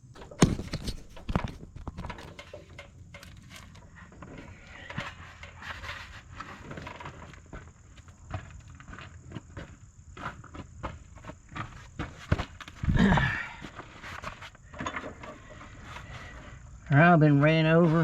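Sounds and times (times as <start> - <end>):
sharp handling knocks: 0.0 - 3.7
clicks and rustling: 0.0 - 9.1.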